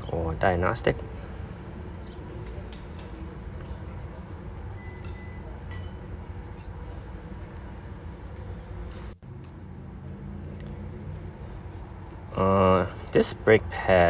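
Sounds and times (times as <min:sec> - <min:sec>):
low background hum: 0:00.0 - 0:14.0.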